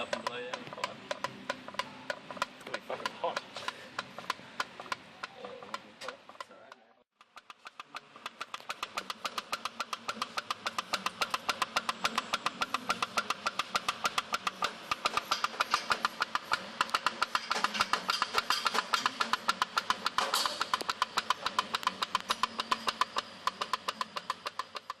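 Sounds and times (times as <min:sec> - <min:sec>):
steam boat engine popping: 0:00.0 - 0:25.0.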